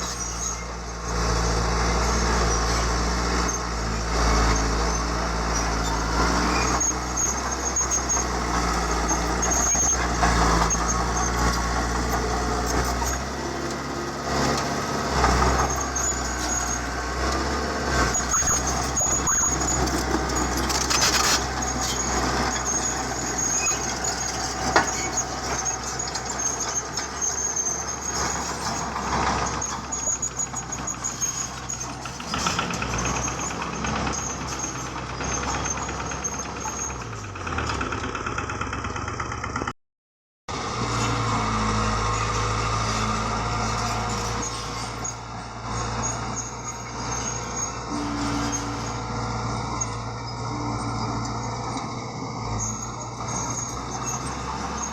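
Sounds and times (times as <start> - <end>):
diesel construction machinery running: 0.0 - 39.8, 40.5 - 54.9
high thin squeal: 40.9 - 51.6.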